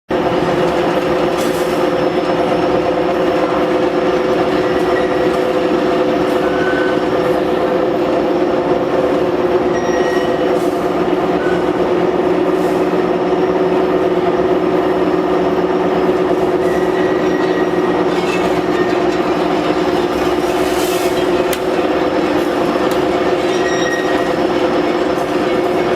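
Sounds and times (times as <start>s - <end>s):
machine droning: 0.1s - 25.9s.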